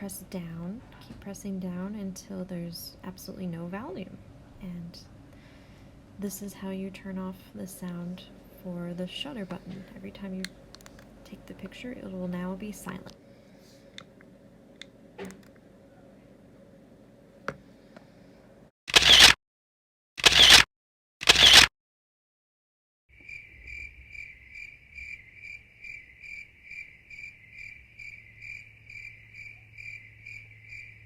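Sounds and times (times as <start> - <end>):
cricket chirping: 23.1 - 31.0.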